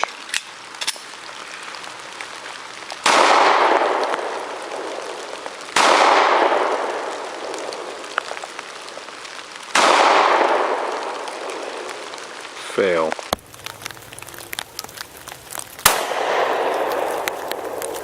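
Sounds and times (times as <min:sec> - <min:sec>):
pistol shots with echo: 0:05.8 - 0:06.8, 0:09.7 - 0:10.9, 0:15.8 - 0:17.1.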